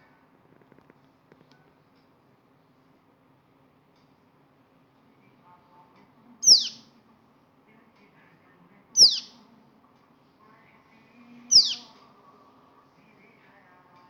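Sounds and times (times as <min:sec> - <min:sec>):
bird calling high falling notes: 0:06.4 - 0:06.8, 0:11.5 - 0:11.9.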